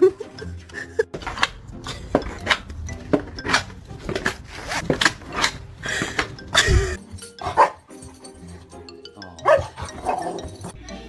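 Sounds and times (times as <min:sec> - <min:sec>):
hard objects clattering: 0:01.1 - 0:07.4.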